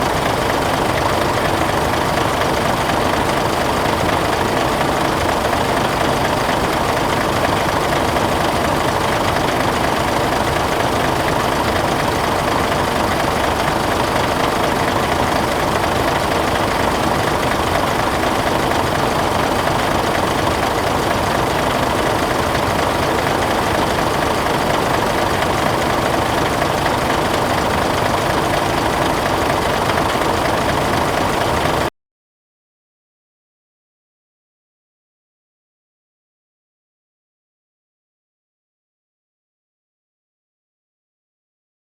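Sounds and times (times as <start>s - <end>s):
diesel truck engine idling: 0.0s - 31.9s.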